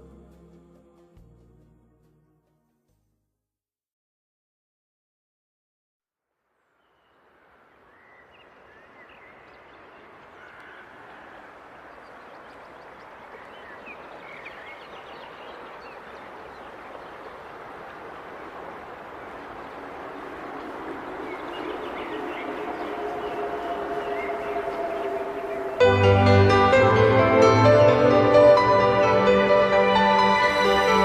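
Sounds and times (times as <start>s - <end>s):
small birds chirping: 6.8s - 25.8s
steady rushing noise: 7.1s - 31.0s
low sustained music chord: 20.0s - 31.0s.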